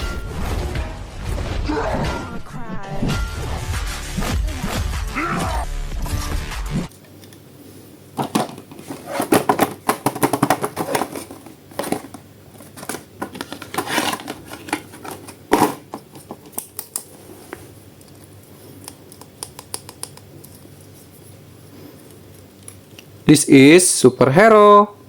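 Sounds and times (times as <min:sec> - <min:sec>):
plastic packaging clicking and crinkling: 0:08.2 - 0:17.1.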